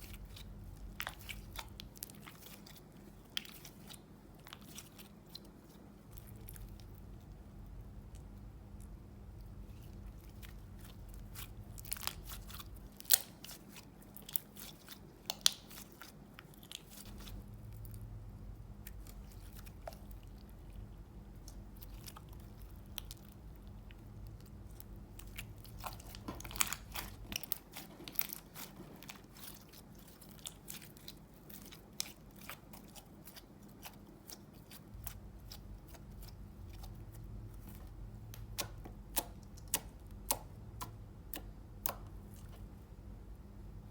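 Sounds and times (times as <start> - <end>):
sticky slime clicks and crackles: 10.4 - 17.3, 21.4 - 42.5.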